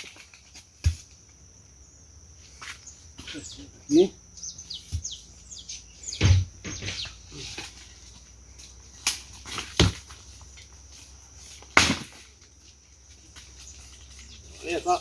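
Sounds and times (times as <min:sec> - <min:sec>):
firewood dropped onto pile: 0:00.0 - 0:01.2, 0:06.1 - 0:12.6.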